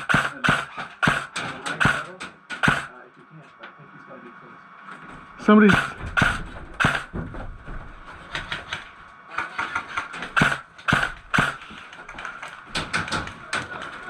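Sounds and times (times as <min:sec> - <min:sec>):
airsoft gun shots: 0:00.0 - 0:02.9, 0:05.7 - 0:07.2, 0:09.7 - 0:11.7.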